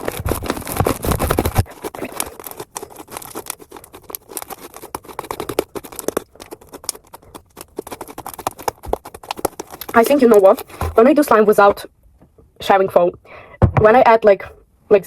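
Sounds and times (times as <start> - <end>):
slime being kneaded by hand: 0.0 - 11.8.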